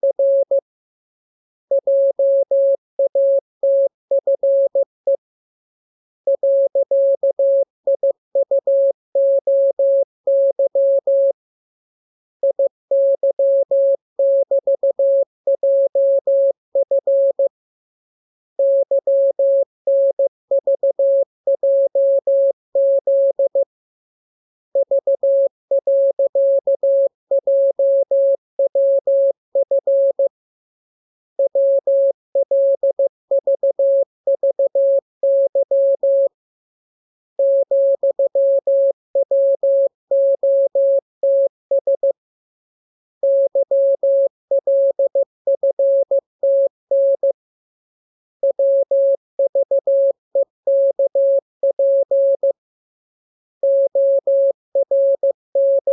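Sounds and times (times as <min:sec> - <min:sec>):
morse code tone beeping: 0:53.7 - 0:55.9.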